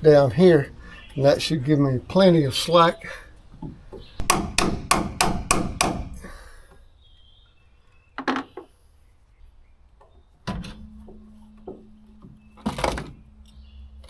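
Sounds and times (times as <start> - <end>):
tools knocking and clunking: 0.0 - 6.4, 8.2 - 8.8, 10.0 - 14.0
low steady hum: 0.0 - 8.0, 9.0 - 14.0.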